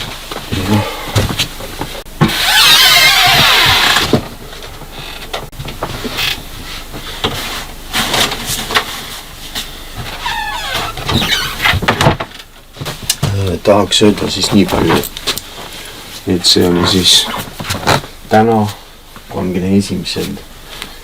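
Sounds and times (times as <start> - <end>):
squeaky clothes rustling: 0.1 - 6.5, 7.6 - 12.0, 16.2 - 18.7.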